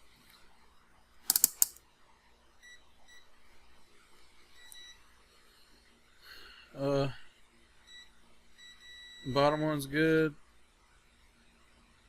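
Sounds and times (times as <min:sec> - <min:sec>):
sharp clicks: 0:01.3 - 0:01.8.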